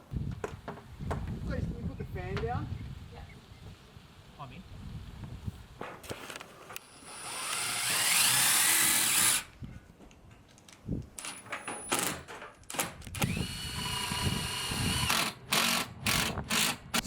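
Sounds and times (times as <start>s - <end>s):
power drill whining: 6.8s - 9.5s, 12.8s - 16.8s.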